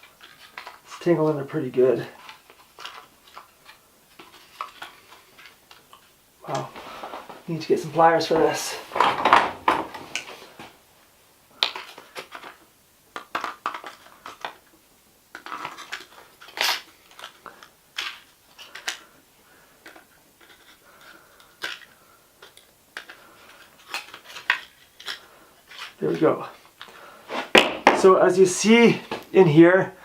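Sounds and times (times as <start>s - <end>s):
small parts clicking and rattling: 0.0s - 1.1s, 2.0s - 6.7s, 11.6s - 19.2s, 19.8s - 27.0s.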